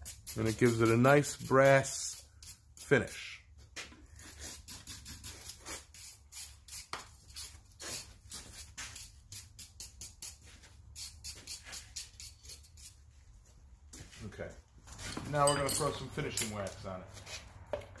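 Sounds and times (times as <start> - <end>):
wire brush scrubbing steel: 0.0 - 3.4, 4.2 - 13.0.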